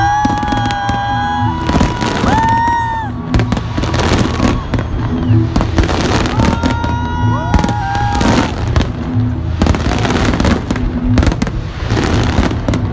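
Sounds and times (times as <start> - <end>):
firework whistles rising: 0.0 - 8.8
fireworks crackling and popping: 0.0 - 12.9.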